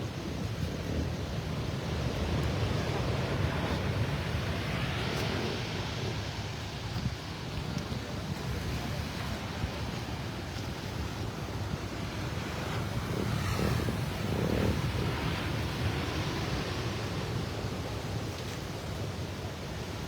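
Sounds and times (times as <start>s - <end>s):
wind buffeting microphone: 0.0s - 20.0s
heavy surf: 7.9s - 20.0s.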